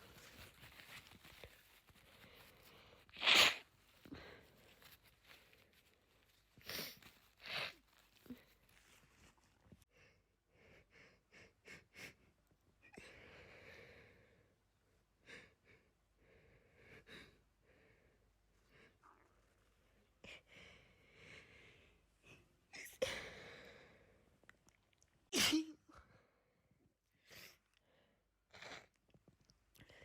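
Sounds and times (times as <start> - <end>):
person sneezing loudly: 25.3 - 25.8.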